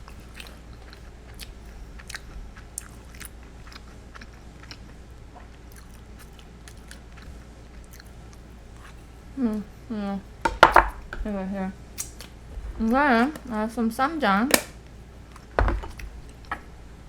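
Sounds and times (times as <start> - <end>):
chewing crunchy food: 0.0 - 9.4, 14.8 - 16.6.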